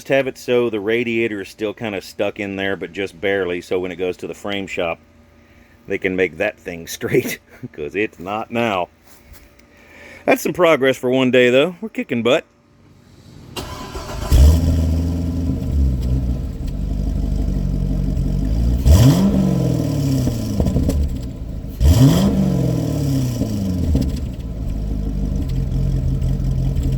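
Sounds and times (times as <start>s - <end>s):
car engine starting and idling: 12.8s - 26.9s
engine revving: 13.0s - 26.9s.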